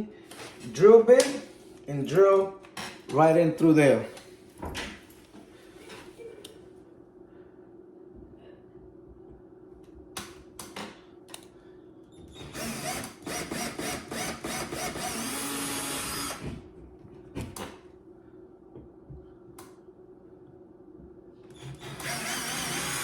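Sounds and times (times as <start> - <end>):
power drill drilling into wall: 12.4 - 16.5, 21.6 - 23.0.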